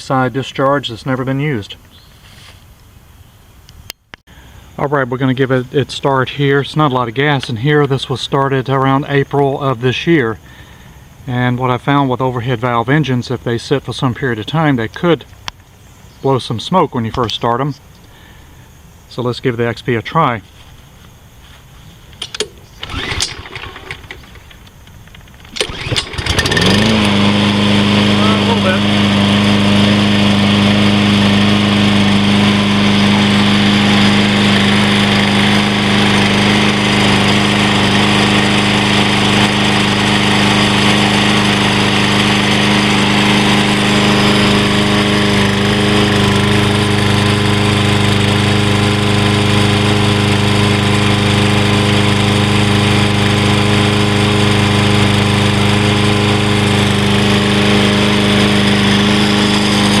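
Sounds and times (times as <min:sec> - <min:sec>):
lawn mower engine running: 0:21.4 - 1:00.0.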